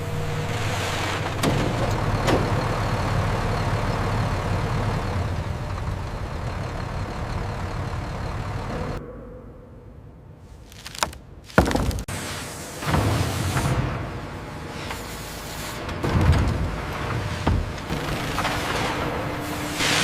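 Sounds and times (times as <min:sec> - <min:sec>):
wood chipper engine drone: 0:00.0 - 0:09.0, 0:13.8 - 0:20.0.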